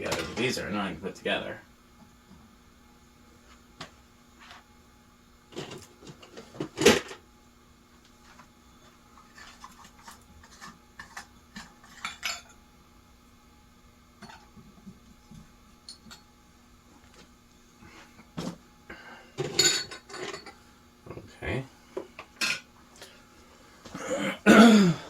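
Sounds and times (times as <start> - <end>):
fan parts clinking and clicking: 19.4 - 20.6.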